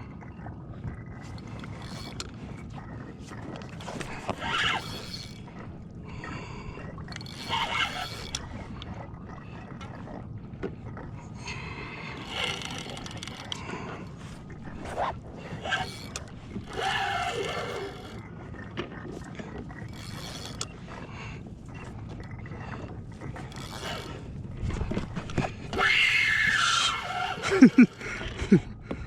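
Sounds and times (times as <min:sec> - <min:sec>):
fishing reel ratchet whirring: 0:01.2 - 0:02.3, 0:03.4 - 0:05.9, 0:06.7 - 0:08.9, 0:12.0 - 0:18.2, 0:19.8 - 0:20.8, 0:23.4 - 0:24.2, 0:25.7 - 0:28.0.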